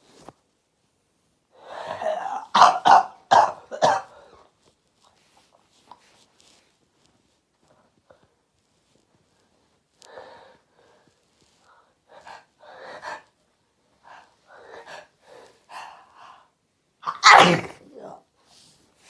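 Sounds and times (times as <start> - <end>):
loud sneeze: 1.9 - 4.1, 17.0 - 18.2.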